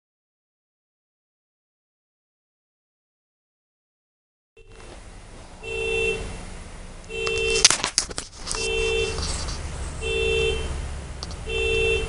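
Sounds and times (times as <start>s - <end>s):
car horn honking: 5.6s - 12.0s.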